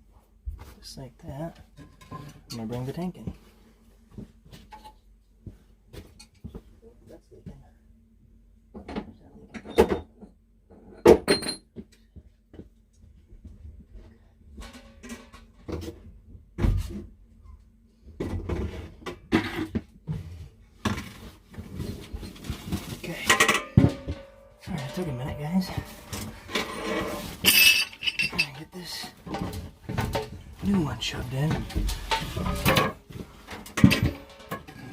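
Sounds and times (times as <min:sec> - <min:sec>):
tank scraping: 0:23.0 - 0:28.6.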